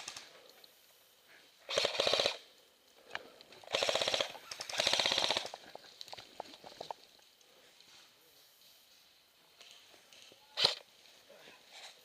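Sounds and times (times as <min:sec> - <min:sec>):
airsoft gun firing bursts: 0:00.0 - 0:00.3, 0:01.7 - 0:02.4, 0:03.6 - 0:05.6.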